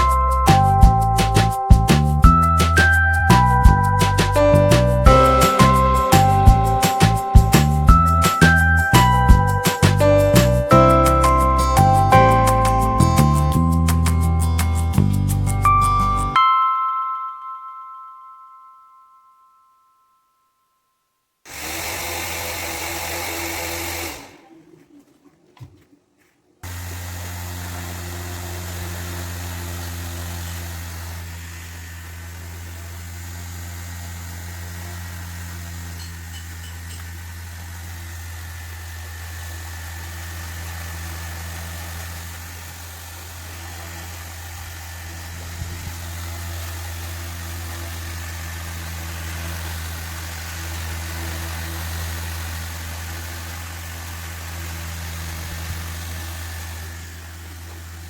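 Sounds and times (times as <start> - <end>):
small motor spinning rotor: 26.6 - 58.0.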